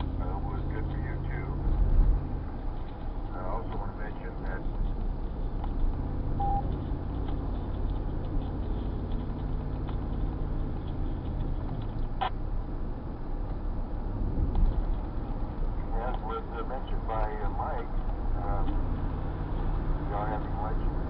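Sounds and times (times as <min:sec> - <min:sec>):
vehicle engine and road rumble: 0:00.0 - 0:21.0
short beep: 0:06.4 - 0:06.6.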